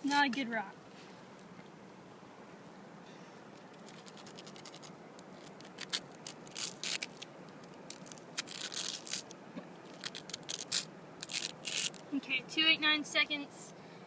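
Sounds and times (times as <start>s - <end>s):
stone scratching on rock: 3.7s - 7.2s, 7.9s - 9.3s, 9.9s - 12.0s.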